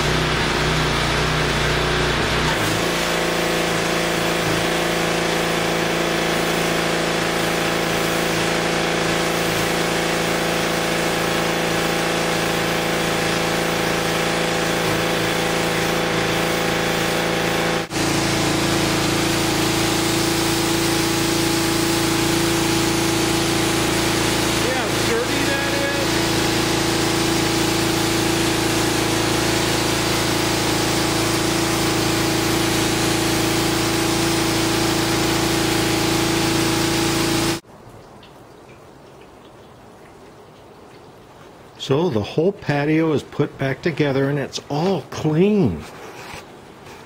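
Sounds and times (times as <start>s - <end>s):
small engine running: 0.0s - 37.6s.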